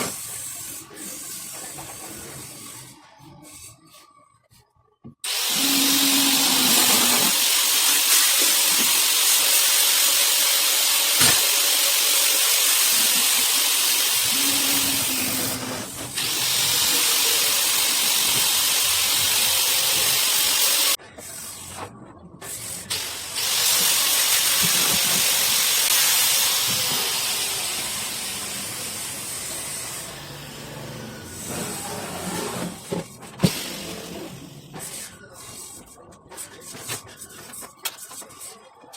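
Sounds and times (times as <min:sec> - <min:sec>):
compressed air hissing: 0:05.3 - 0:09.6, 0:12.8 - 0:21.0.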